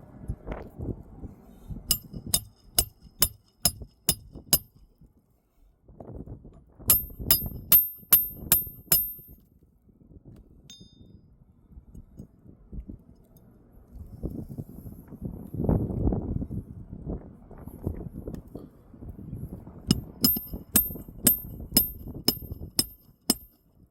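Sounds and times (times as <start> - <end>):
hammer tapping on metal tool: 1.9 - 4.8, 6.9 - 9.4, 19.9 - 23.6.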